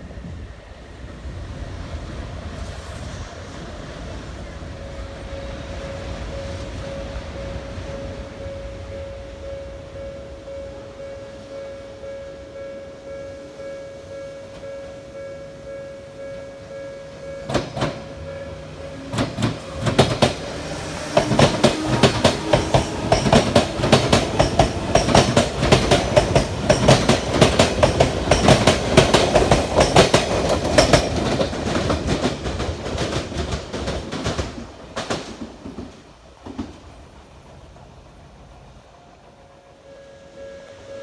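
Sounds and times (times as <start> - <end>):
train wheels clattering over rail joints: 17.4 - 18.1, 19.0 - 36.9.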